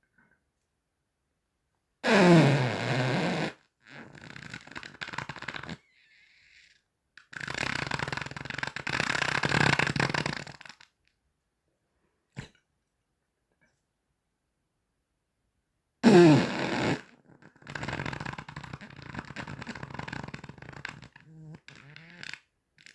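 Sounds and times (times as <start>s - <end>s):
farts: 2.0s - 11.0s, 16.0s - 22.9s.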